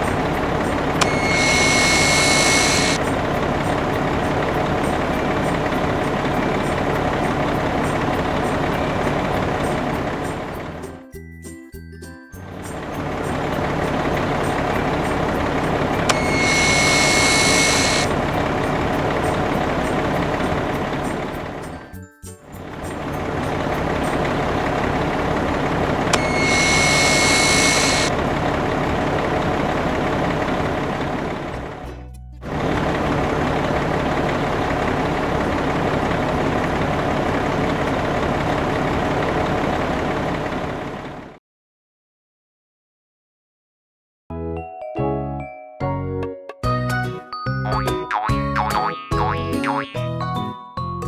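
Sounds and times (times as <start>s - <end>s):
heavy vehicle engine running: 0.0s - 11.0s, 12.4s - 41.4s
high whine with hiss: 1.0s - 3.1s, 16.0s - 18.8s, 26.1s - 28.2s.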